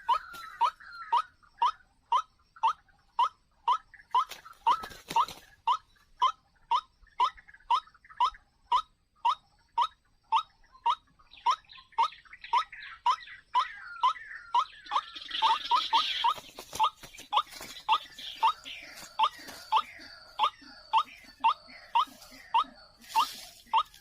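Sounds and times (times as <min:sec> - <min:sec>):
waterhen calling: 0:03.2 - 0:05.8, 0:11.4 - 0:24.0.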